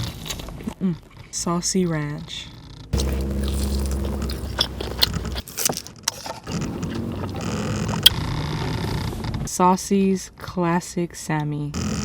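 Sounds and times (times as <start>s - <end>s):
wet chewing and smacking: 0.0s - 1.3s, 3.0s - 8.2s.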